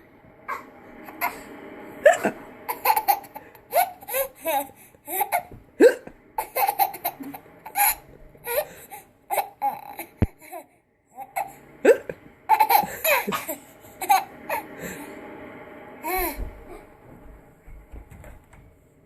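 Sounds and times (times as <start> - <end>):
laughter: 11.9 - 14.6.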